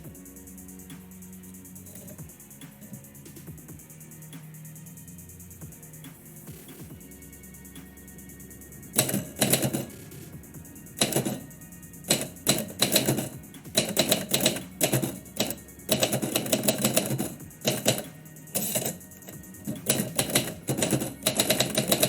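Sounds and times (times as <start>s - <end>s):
instrumental background music: 0.0s - 22.0s
typewriter keys striking: 9.0s - 9.9s, 11.0s - 11.5s, 12.1s - 22.0s.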